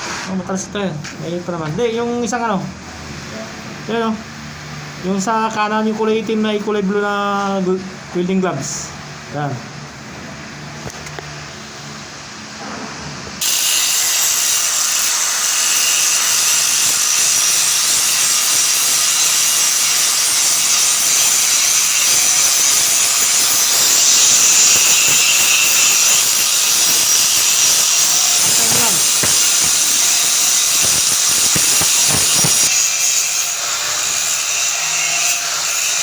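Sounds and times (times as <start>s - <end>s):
welding arc crackling hiss: 13.4s - 36.0s.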